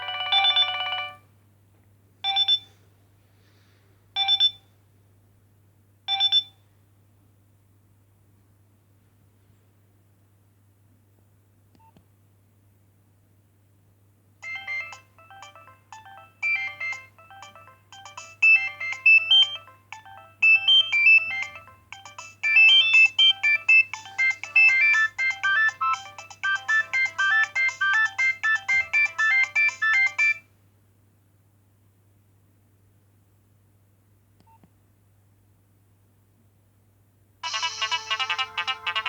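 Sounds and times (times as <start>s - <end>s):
polyphonic phone ringtone: 0.0s - 1.2s, 14.4s - 30.4s, 37.4s - 39.0s.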